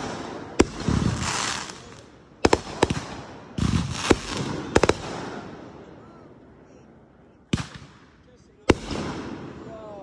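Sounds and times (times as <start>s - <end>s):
fireworks crackling hiss: 0.0s - 5.5s
fireworks bangs: 0.0s - 5.8s, 7.5s - 9.9s.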